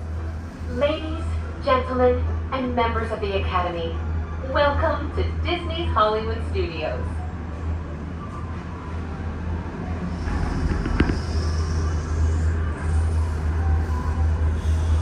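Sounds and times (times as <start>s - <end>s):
gondola cabin low drone: 0.0s - 15.0s
high whine: 9.8s - 15.0s.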